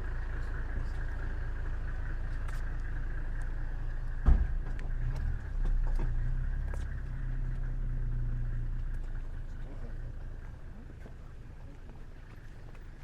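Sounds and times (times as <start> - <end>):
vehicle engine rumbling: 0.0 - 13.0
sharp thump: 4.2 - 4.8.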